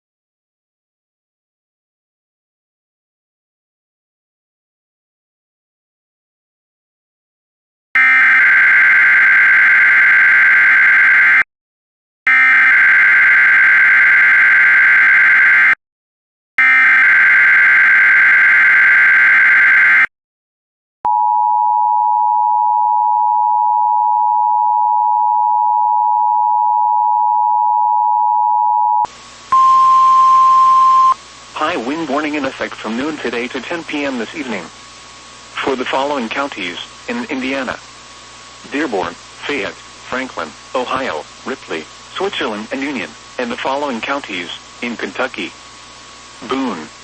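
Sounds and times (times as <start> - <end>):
two-tone attention signal: 21.1 - 31.2.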